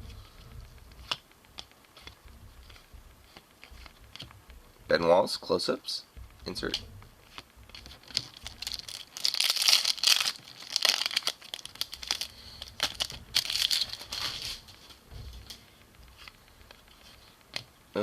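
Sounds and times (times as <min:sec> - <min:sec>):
card pack wrapper crinkling and tearing: 0:06.5 - 0:14.6.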